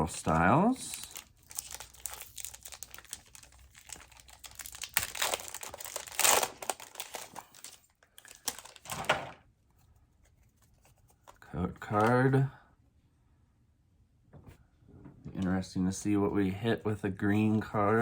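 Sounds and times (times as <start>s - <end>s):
foil wrapper crinkling and tearing: 0.8s - 9.1s.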